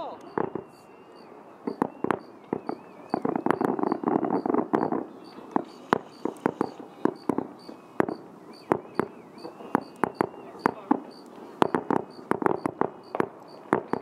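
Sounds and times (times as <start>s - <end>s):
fireworks crackling: 0.0s - 14.0s
fireworks cracks and pops: 0.0s - 14.0s.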